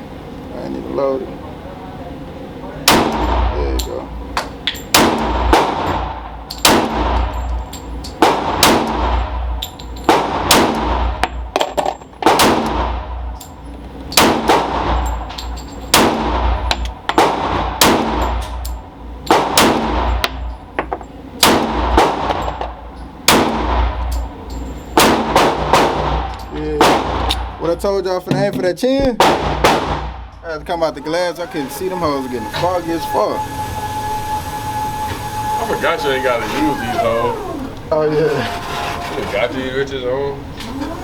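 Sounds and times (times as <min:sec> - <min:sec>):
pistol shots echoing indoors: 0:02.8 - 0:03.6, 0:04.9 - 0:07.3, 0:08.1 - 0:09.5, 0:10.1 - 0:11.3, 0:14.1 - 0:15.2, 0:15.9 - 0:18.5, 0:19.2 - 0:20.4, 0:23.2 - 0:24.2, 0:25.0 - 0:27.6, 0:29.2 - 0:30.3.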